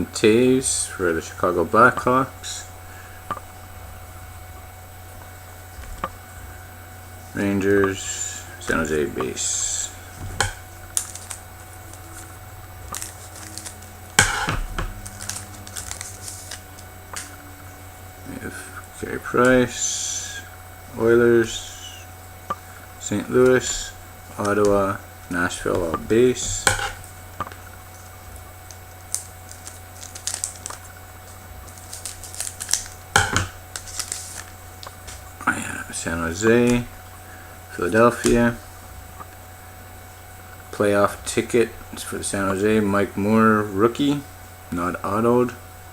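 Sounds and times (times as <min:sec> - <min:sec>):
faint electrical hum: 0:00.0 - 0:45.9
trading cards clicking: 0:08.7 - 0:17.5, 0:25.7 - 0:35.3.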